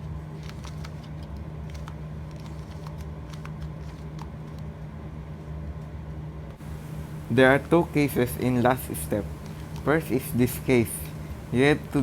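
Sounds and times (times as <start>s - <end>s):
plastic puzzle cube clicking: 0.4s - 4.6s
steady low hum: 3.0s - 12.0s.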